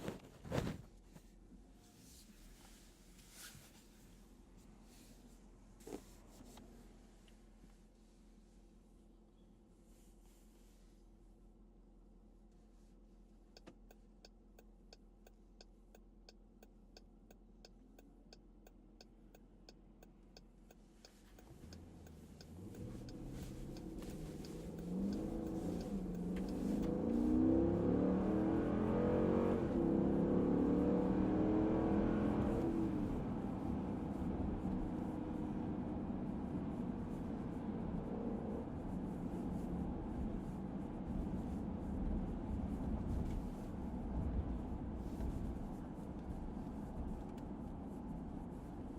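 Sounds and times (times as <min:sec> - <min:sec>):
car engine: 0:13.4 - 0:48.9
turn signal clicking: 0:13.5 - 0:27.7.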